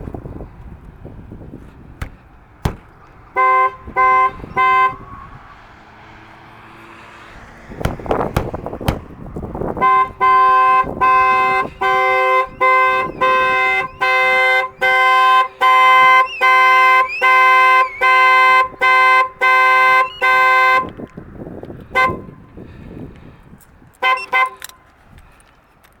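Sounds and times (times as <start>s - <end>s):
car horn blasts: 2.0s - 5.3s, 7.8s - 21.1s, 21.9s - 22.5s, 24.0s - 24.8s.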